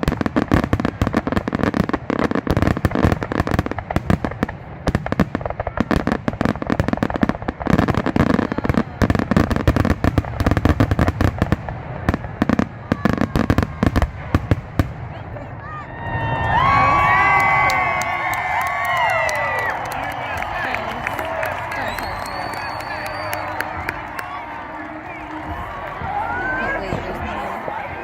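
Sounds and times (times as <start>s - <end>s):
fireworks bursting: 0.0s - 28.0s.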